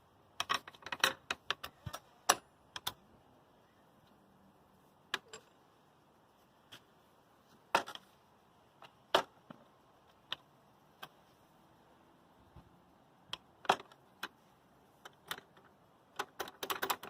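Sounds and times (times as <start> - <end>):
sharp clicks and knocks: 0.4 - 3.0, 8.8 - 11.2, 13.3 - 14.4, 15.0 - 17.0.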